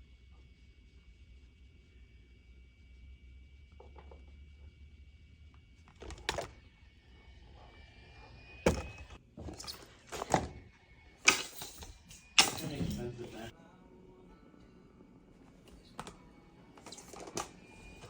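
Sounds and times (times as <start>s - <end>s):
faint low hum: 0.0s - 18.0s
sharp knocks and thumps: 8.7s - 9.6s.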